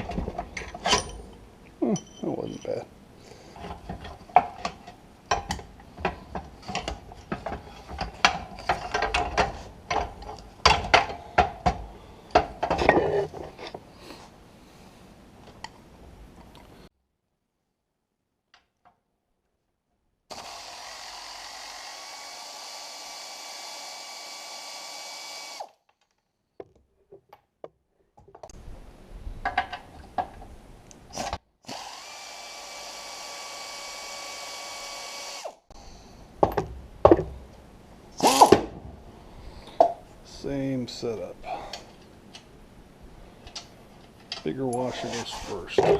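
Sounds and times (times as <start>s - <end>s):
metal parts clinking: 0.5s - 2.8s
electric drill whining: 20.3s - 25.8s, 31.7s - 35.6s, 38.2s - 38.5s.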